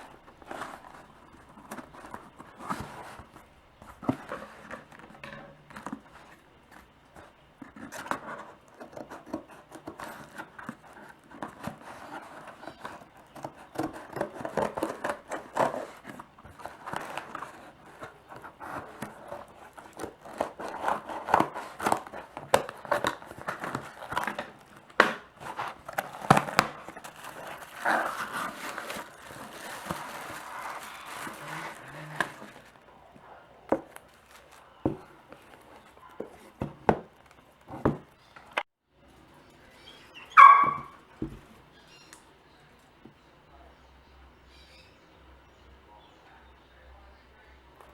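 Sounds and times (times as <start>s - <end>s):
cardboard scraping: 0.0s - 38.7s
plastic wrap crinkling and tearing: 9.0s - 32.9s, 33.7s - 37.8s.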